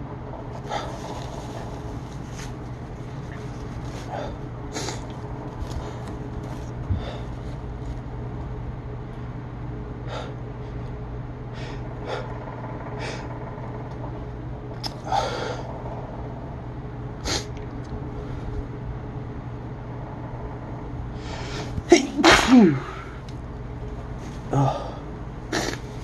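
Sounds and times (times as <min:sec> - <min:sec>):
steady low hum: 0:00.0 - 0:26.0
nasal snorts and sniffs: 0:04.0 - 0:05.1, 0:25.5 - 0:25.9.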